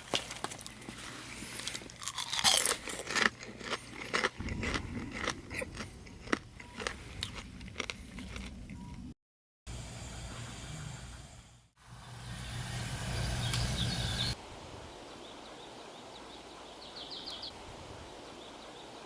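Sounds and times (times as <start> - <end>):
close crunching and clicking: 0.0 - 9.0.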